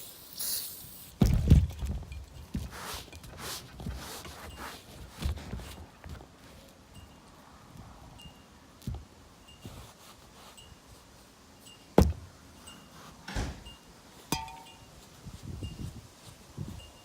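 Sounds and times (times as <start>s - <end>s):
knocks and thumps: 1.2s - 2.7s, 12.0s - 12.3s
sharp metallic clink: 14.3s - 14.9s.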